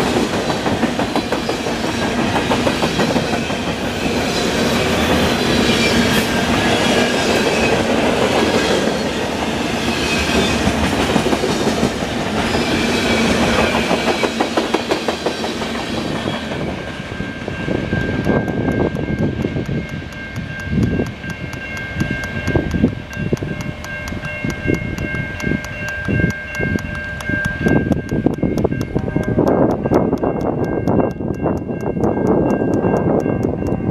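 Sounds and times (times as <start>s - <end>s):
train wheels clacking over rail joints: 0.0s - 33.9s
fast even ticking: 17.8s - 33.9s.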